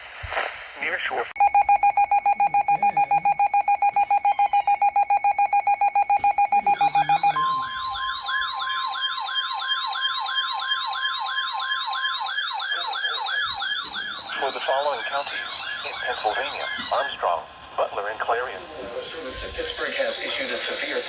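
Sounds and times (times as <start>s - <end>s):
rapid electronic beeping: 1.4s - 9.2s
warbling siren-like alarm: 1.4s - 17.2s
steady alarm tone: 1.4s - 17.5s.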